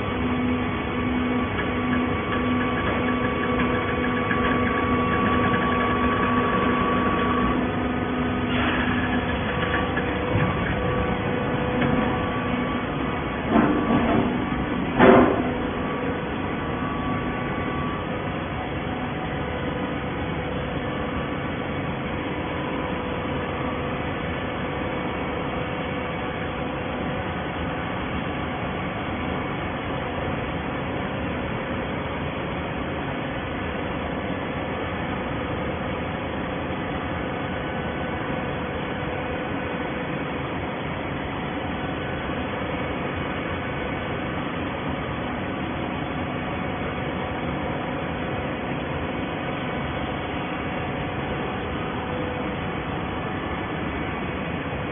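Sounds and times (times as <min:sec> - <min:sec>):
paper baler droning: 0:00.0 - 0:20.5.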